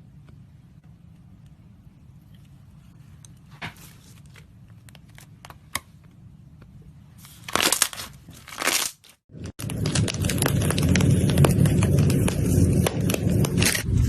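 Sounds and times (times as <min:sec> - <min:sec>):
crunchy bursts: 0:08.5 - 0:14.0.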